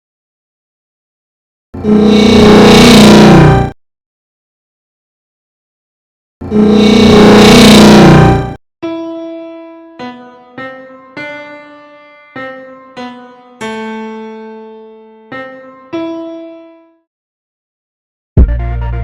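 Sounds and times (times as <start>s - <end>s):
slow piano melody: 8.8s - 17.0s.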